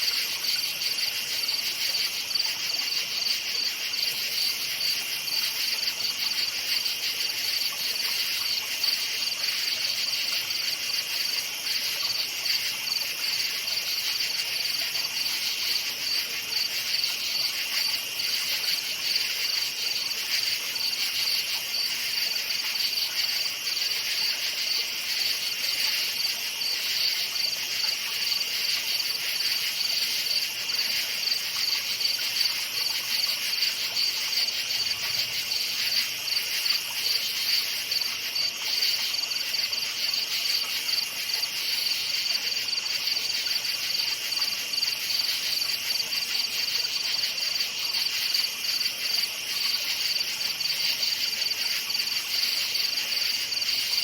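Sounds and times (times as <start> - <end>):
crickets chirping: 0.0 - 54.0.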